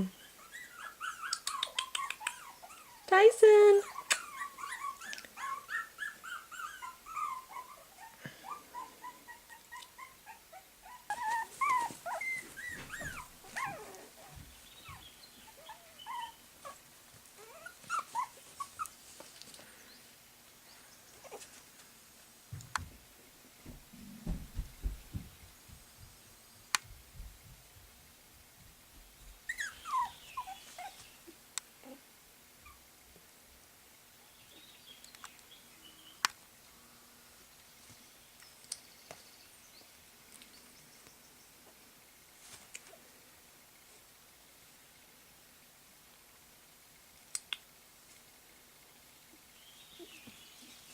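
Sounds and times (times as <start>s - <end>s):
puppies whimpering: 0.1s - 16.8s, 17.4s - 18.9s, 29.5s - 31.0s
low thumps: 23.6s - 26.2s.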